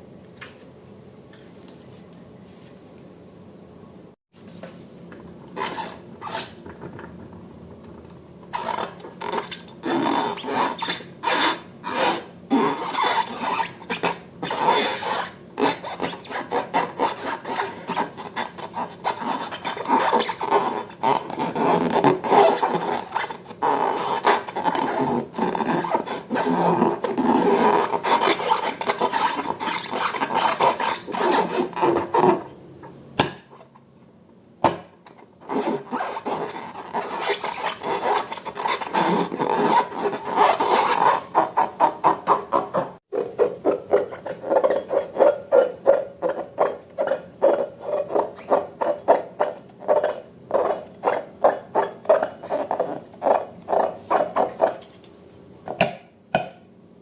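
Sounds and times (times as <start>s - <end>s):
slime rubbing and scraping by hand: 8.6s - 32.4s, 35.4s - 55.0s.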